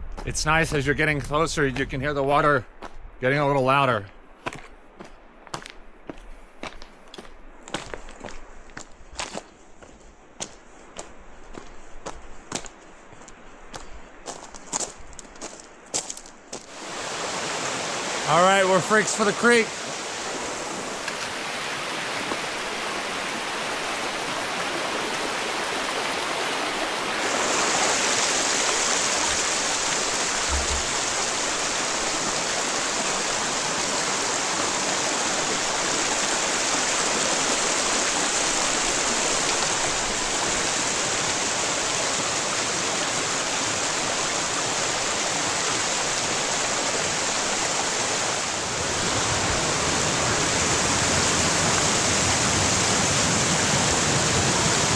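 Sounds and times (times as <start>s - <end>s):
creek and waterfall rushing: 16.6s - 54.9s.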